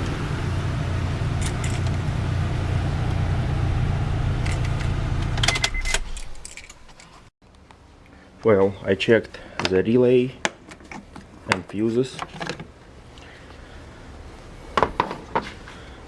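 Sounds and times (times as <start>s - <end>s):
car engine running: 0.0s - 6.4s
cooling fan spinning: 0.0s - 6.6s
metallic jangling and clicks: 4.4s - 7.1s.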